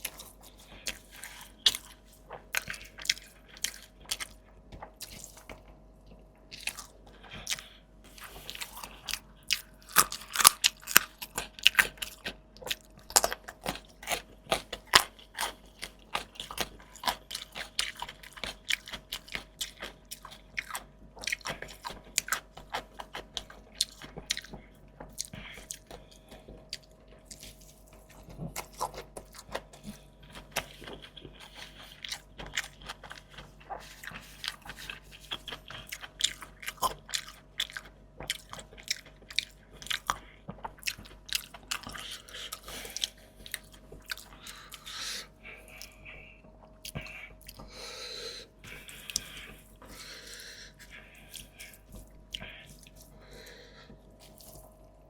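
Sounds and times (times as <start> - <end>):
chewing crisp food: 0.0 - 55.0.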